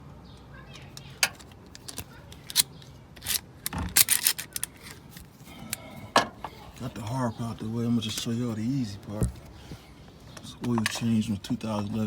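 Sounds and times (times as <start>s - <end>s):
objects clicking and rubbing: 0.9s - 6.9s.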